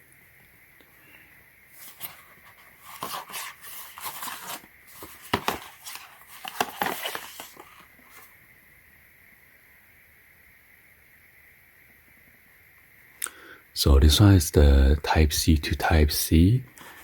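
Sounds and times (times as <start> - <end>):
packaging rustling and tearing: 1.8 - 8.3.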